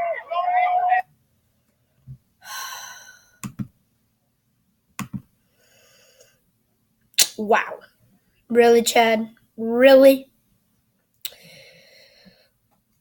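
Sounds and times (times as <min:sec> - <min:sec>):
breathy sigh: 0:02.4 - 0:03.4.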